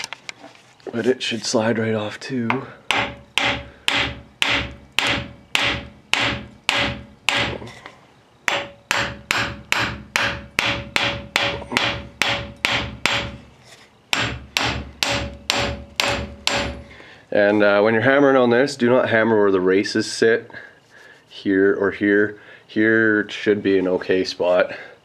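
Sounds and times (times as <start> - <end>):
hammer striking steel hub: 2.5 - 7.8, 8.5 - 13.4, 14.1 - 16.9.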